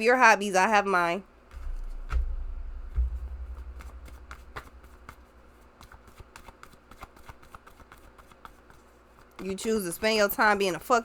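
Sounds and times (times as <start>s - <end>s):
cards being shuffled by hand: 6.4s - 9.6s.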